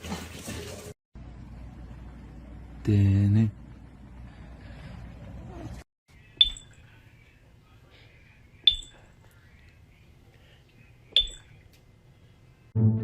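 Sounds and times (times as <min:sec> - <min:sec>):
high-pitched metallic dings: 0:06.4 - 0:06.8, 0:08.7 - 0:09.0, 0:11.2 - 0:11.5.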